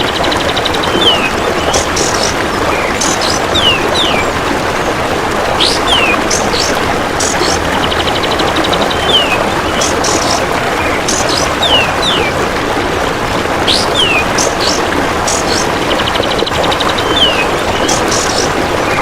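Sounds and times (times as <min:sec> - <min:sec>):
steady rushing background: 0:01.1 - 0:19.0
insect fast high ticking: 0:13.7 - 0:16.4.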